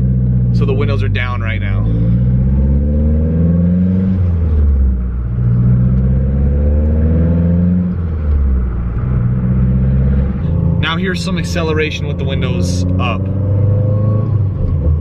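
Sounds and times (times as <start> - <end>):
car engine accelerating through gears: 0.0 - 15.0.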